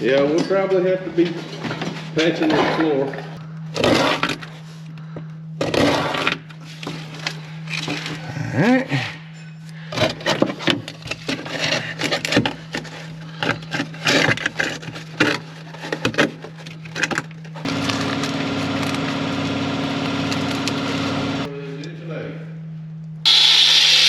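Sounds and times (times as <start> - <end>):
power tool running: 17.6 - 21.5, 23.3 - 24.0.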